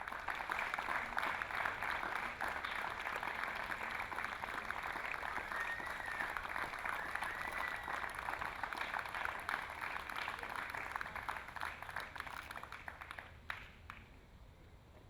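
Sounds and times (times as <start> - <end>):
audience applauding: 0.0 - 14.0.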